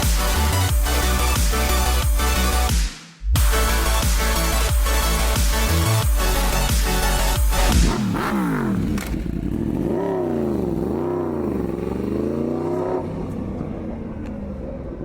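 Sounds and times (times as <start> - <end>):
motorcycle engine revving: 7.1 - 15.0.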